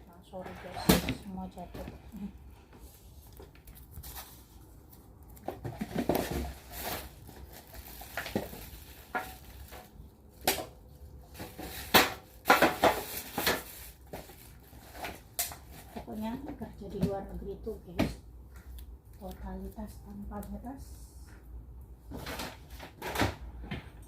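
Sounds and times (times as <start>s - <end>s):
objects clattering and knocking: 0.2s - 2.3s, 5.4s - 17.2s, 22.0s - 24.0s.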